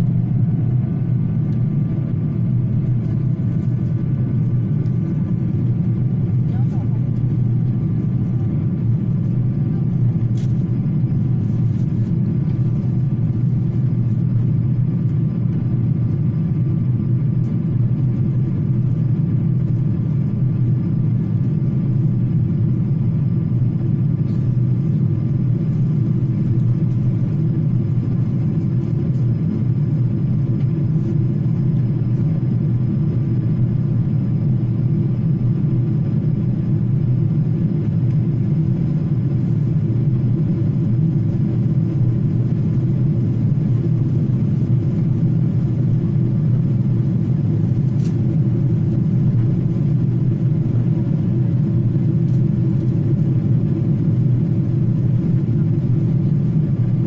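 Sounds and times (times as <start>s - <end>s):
vehicle low rumble: 0.0s - 57.0s.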